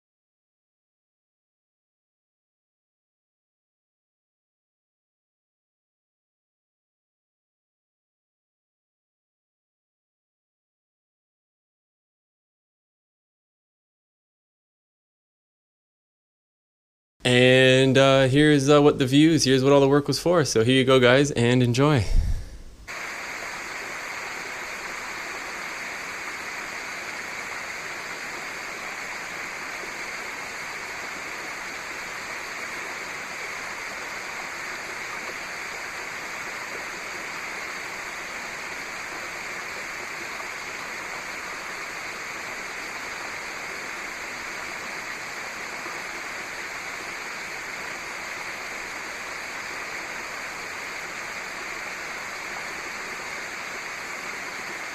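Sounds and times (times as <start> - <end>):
running water rushing: 22.9 - 54.9.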